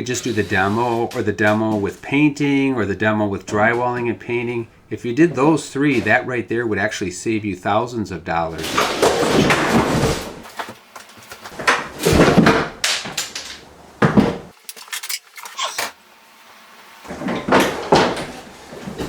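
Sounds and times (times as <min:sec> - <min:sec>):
wooden cabinets knocking and rattling: 0:08.6 - 0:14.6, 0:17.1 - 0:19.0.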